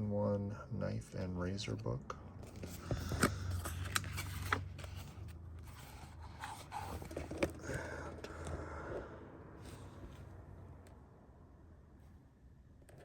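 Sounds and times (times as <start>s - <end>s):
steady low hum: 0.0s - 13.0s
objects scraping and rustling: 2.4s - 8.6s.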